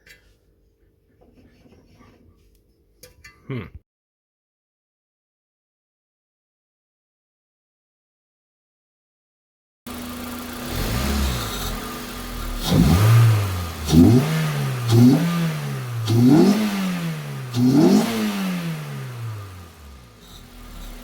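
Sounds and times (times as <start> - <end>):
car engine revving: 9.9 - 21.0.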